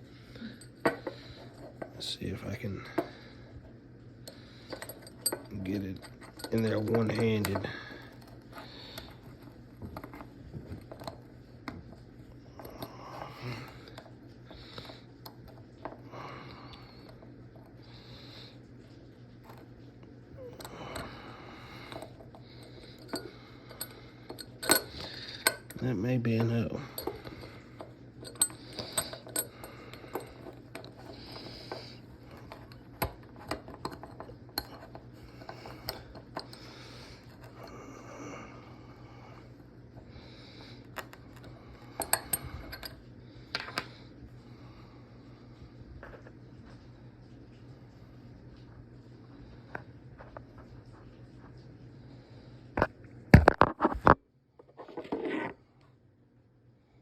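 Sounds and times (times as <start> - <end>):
steel ratchet parts clicking: 22.7 - 25.8, 26.9 - 31.8.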